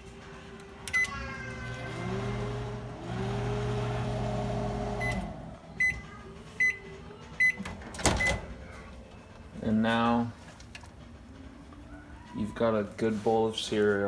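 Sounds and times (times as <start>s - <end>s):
microwave oven humming: 0.8s - 8.7s
microwave keypad beep: 5.0s - 6.0s, 7.4s - 7.6s.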